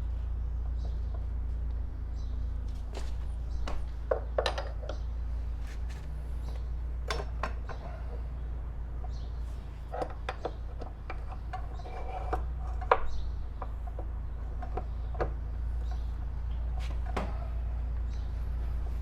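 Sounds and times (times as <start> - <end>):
steady low hum: 0.0 - 19.0
metal tools clicking and knocking: 4.1 - 5.1, 9.9 - 16.1.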